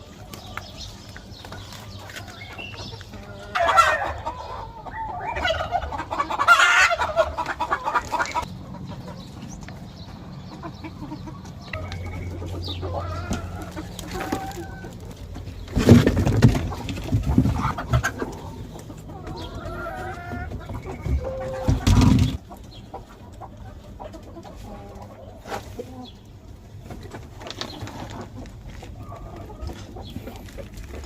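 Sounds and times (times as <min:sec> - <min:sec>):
hens clucking: 0:00.0 - 0:31.0.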